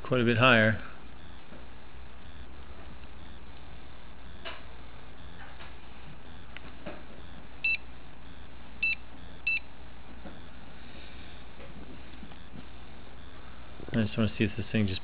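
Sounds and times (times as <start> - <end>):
steady low hum: 0.0 - 15.0
short electronic beeps: 7.2 - 9.7.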